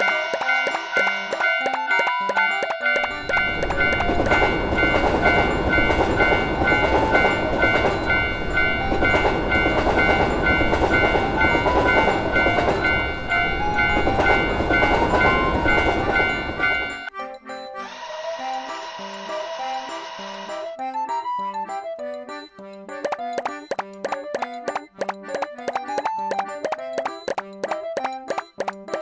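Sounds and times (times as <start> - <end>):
railroad crossing bell ringing: 0.0 - 20.6
simple stepped tune: 0.0 - 29.0
train rumbling and rattling: 3.0 - 16.8.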